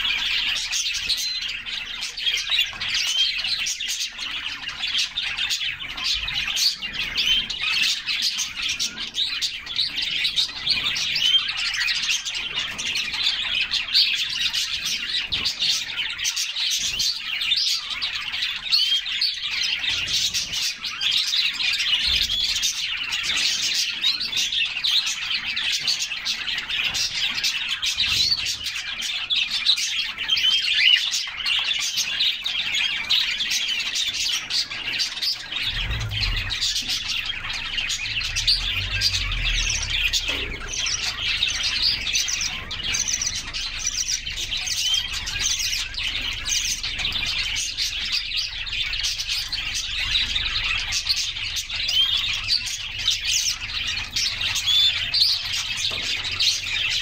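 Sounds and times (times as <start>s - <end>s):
canaries chirping and trilling: 0.0s - 57.0s
faint low rumble: 35.6s - 42.5s.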